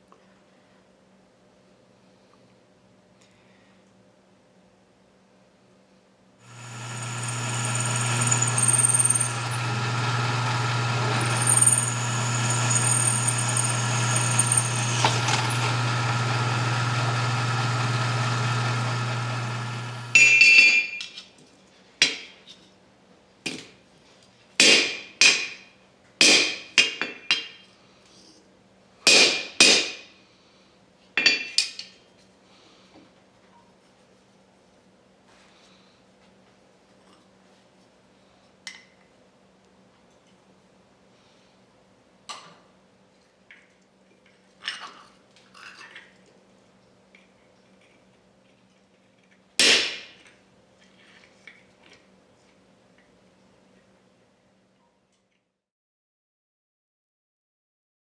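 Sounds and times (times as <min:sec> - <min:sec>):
machine humming and whining: 0:06.4 - 0:20.2.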